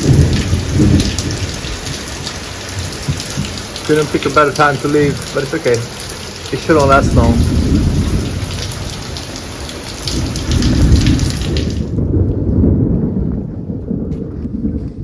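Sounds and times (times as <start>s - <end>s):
rain falling: 0.0s - 15.0s
heavy low rumble: 6.7s - 9.0s, 10.2s - 15.0s.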